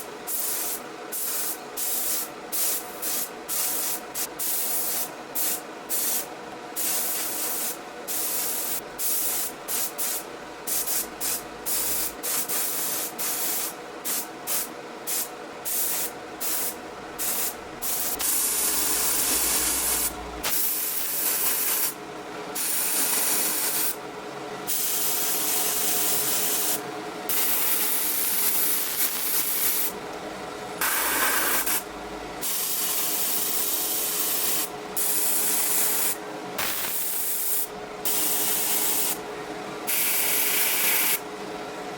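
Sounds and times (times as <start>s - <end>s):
spray gun hissing in bursts: 0.3s - 22.0s, 22.6s - 24.0s, 24.7s - 30.0s, 30.8s - 39.2s, 39.9s - 41.2s
faint steady hum: 16.2s - 20.6s.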